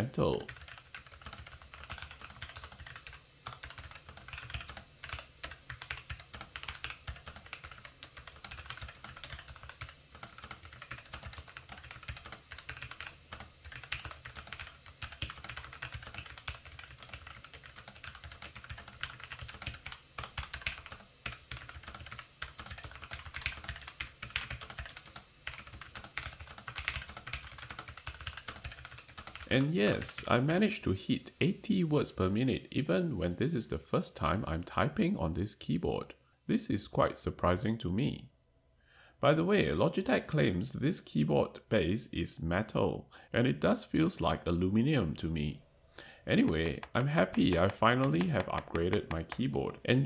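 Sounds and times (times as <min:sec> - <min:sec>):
fast keyboard typing: 0:00.2 - 0:30.8, 0:46.4 - 0:50.0.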